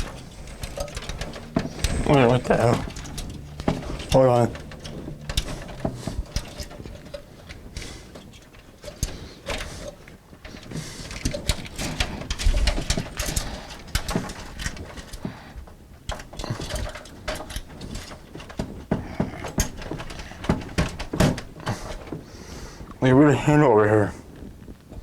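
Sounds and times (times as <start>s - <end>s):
computer parts clicking and rattling: 0.0s - 22.2s.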